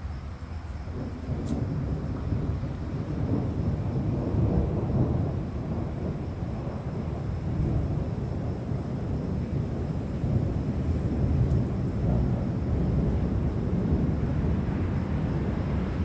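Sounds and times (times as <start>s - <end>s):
rolling thunder: 0.0s - 16.0s.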